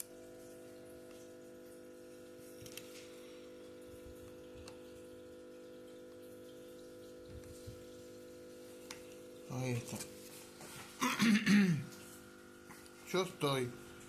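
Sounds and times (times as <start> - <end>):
steady background hum: 2.4 - 14.0.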